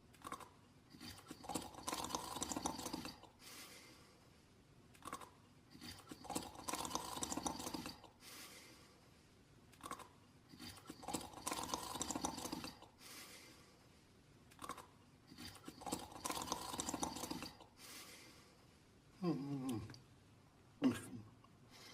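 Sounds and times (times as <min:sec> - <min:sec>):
cartoon snoring: 0:00.2 - 0:03.4, 0:05.0 - 0:08.2, 0:09.8 - 0:12.9, 0:14.6 - 0:17.7.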